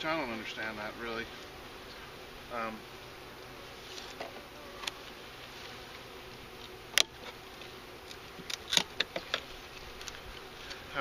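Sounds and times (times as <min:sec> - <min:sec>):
bees buzzing: 0:00.0 - 0:11.0.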